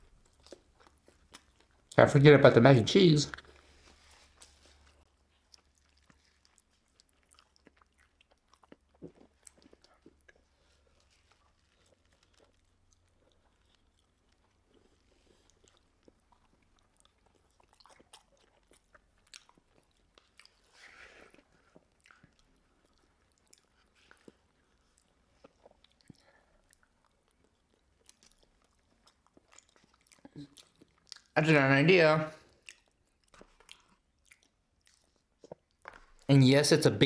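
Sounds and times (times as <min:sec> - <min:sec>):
person chewing: 0:05.5 - 0:31.4, 0:32.5 - 0:36.2.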